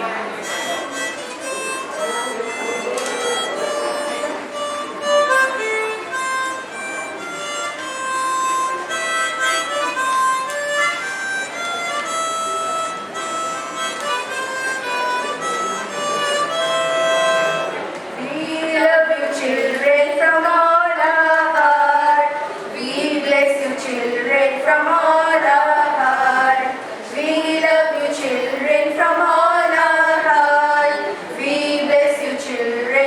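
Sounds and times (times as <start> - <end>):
reedy instrumental melody: 0.4 - 18.0.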